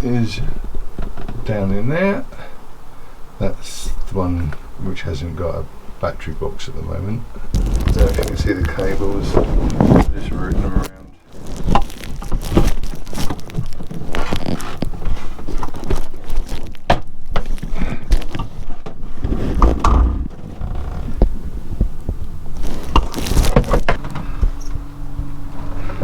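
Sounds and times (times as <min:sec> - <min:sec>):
steady low hum: 0:04.4 - 0:11.2, 0:19.0 - 0:23.0
low rumble: 0:07.6 - 0:11.0, 0:19.2 - 0:21.9
knocks and clicks: 0:19.5 - 0:21.4.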